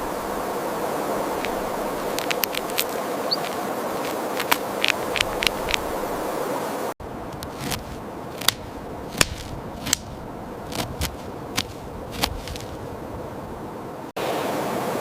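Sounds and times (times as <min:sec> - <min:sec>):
faint steady hiss: 0:00.0 - 0:15.0
sharp clicks: 0:01.4 - 0:05.8, 0:07.4 - 0:12.7.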